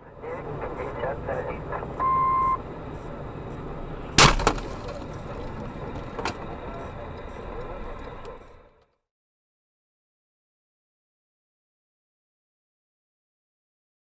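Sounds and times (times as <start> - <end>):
road noise: 0.0 - 9.0
vehicle crash with cracking: 4.2 - 6.5.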